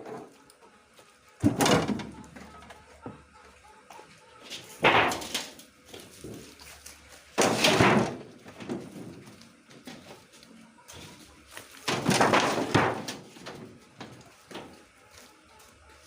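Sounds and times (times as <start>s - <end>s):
metal clattering and banging: 4.8s - 5.6s, 7.4s - 9.2s, 11.9s - 14.7s.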